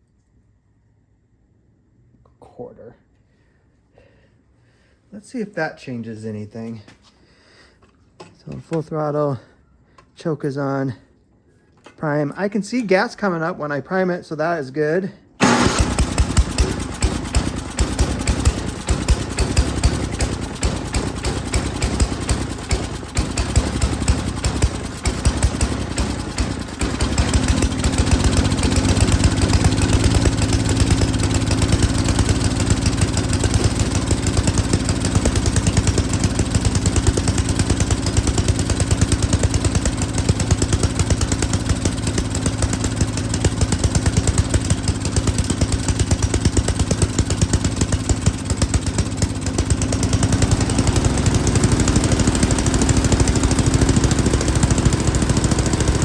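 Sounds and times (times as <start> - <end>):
snowblower engine running: 15.4 - 56.0.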